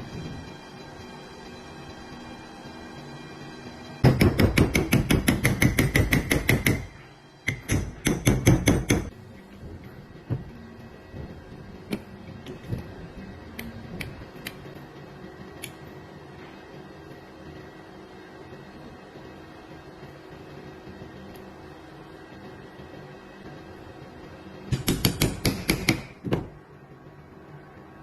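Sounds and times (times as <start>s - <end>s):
air impact wrench hammering: 4.0s - 9.1s, 24.7s - 26.4s.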